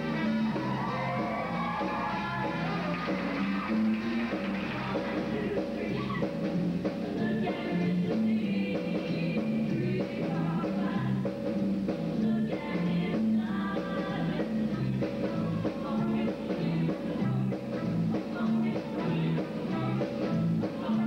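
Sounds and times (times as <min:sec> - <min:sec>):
instrumental backing with bass: 0:00.0 - 0:21.0
choir singing: 0:07.1 - 0:10.5.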